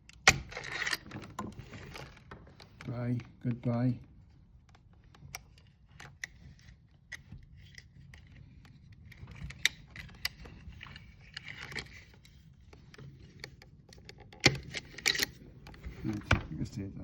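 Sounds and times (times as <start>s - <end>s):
small clicks and taps from tools: 4.6s - 16.2s.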